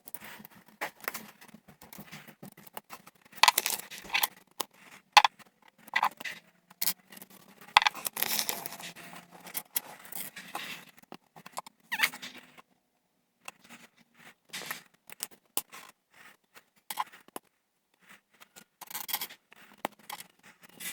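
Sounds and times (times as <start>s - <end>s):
plastic bricks clicking and rattling: 0.1s - 12.5s, 13.5s - 20.9s
rustling of plastic pieces: 0.2s - 4.5s, 5.9s - 10.9s.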